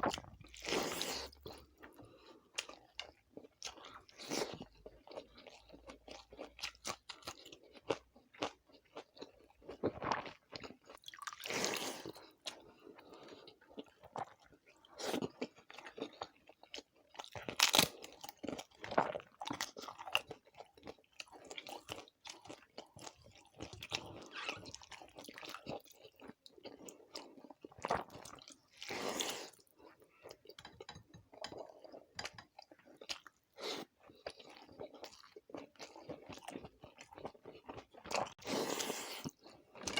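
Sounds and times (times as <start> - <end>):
crunching fried food: 13.6 - 30.0.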